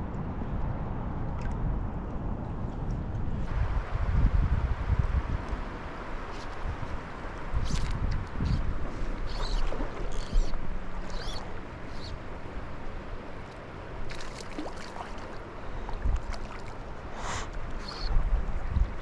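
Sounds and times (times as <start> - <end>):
wind buffeting microphone: 0.0 - 19.0
running water: 3.5 - 19.0
light ticks or splashes: 12.8 - 18.1.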